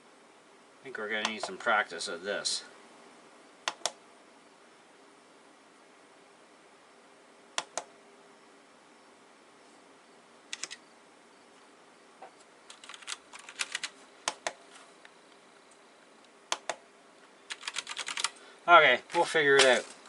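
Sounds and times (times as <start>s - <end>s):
mechanical keyboard keys clicking: 10.5s - 10.8s, 12.7s - 14.6s, 17.5s - 18.4s.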